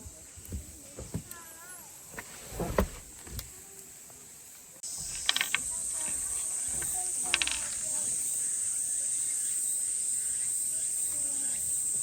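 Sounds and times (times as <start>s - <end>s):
high-pitched insect chorus: 3.1s - 12.0s.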